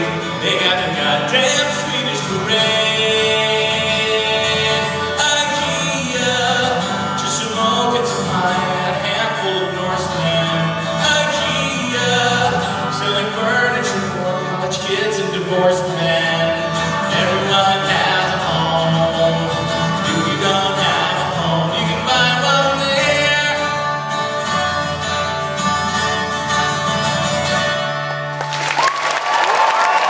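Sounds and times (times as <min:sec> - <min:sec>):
live band with guitar: 0:00.0 - 0:30.0
audience applause: 0:28.1 - 0:30.0.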